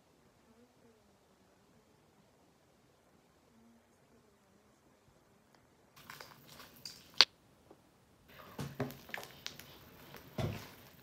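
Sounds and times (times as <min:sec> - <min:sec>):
hands squishing slime in water: 0:06.0 - 0:07.3, 0:08.3 - 0:11.0.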